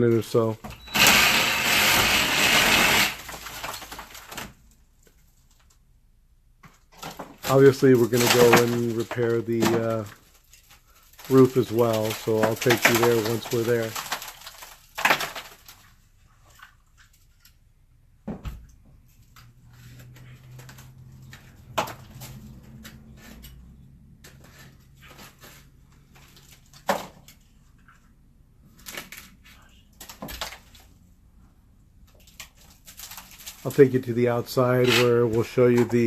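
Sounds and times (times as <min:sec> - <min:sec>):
knocks and thumps: 0:18.2 - 0:19.0.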